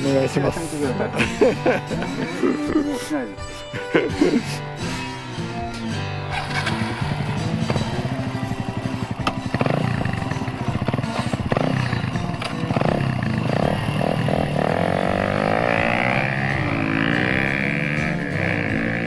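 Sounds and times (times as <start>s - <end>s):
background music: 0.0s - 19.0s
motorcycle engine revving: 4.6s - 19.0s.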